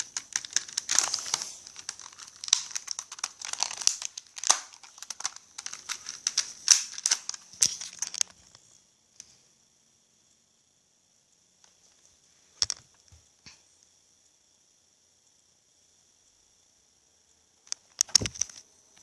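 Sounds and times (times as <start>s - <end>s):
wrapping material crumpling: 0.0s - 8.0s.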